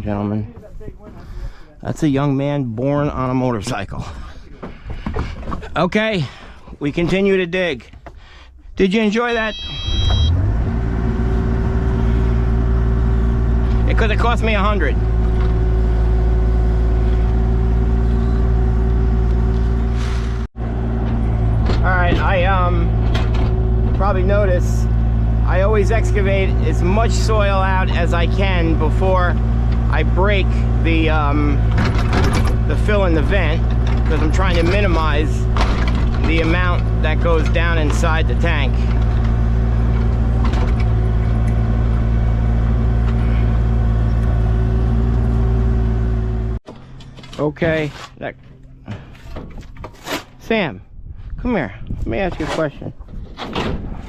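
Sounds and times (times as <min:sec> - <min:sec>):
excavator diesel engine running: 0:08.2 - 0:47.9.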